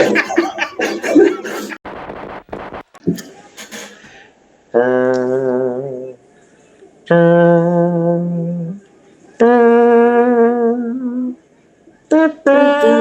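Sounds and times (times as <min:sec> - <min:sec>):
person humming a tune: 0:12.2 - 0:13.0.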